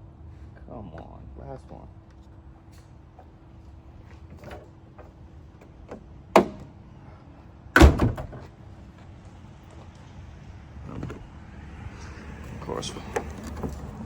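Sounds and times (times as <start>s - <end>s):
car door slamming: 5.9s - 6.7s, 7.8s - 8.5s.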